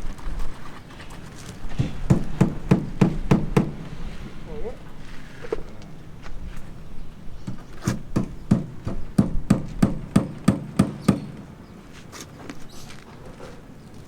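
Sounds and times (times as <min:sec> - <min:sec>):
hammer striking: 0:01.8 - 0:03.9, 0:07.5 - 0:11.4.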